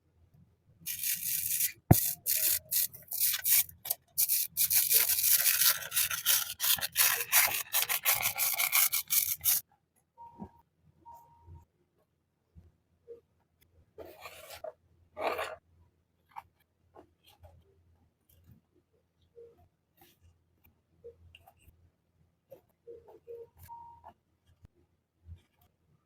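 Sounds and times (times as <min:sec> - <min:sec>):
hands rustling packaging: 0:00.9 - 0:09.6.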